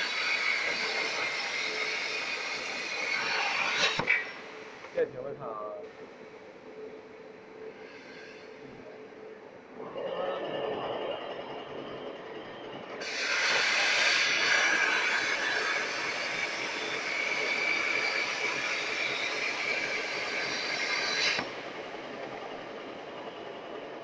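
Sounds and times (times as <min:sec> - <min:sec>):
plasma cutting torch hissing: 0:00.0 - 0:04.9, 0:13.0 - 0:21.5.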